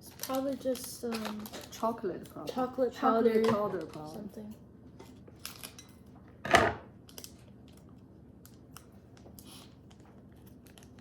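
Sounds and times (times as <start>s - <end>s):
packet clicking and rustling: 0.1s - 1.8s, 8.5s - 11.0s.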